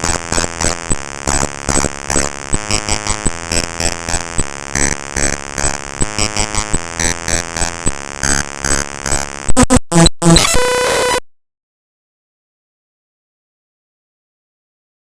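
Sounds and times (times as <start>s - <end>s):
loud chopped bursts: 0.0s - 10.7s
harsh buzzing electronic drone: 0.0s - 11.2s
steady electronic tone: 0.0s - 11.2s.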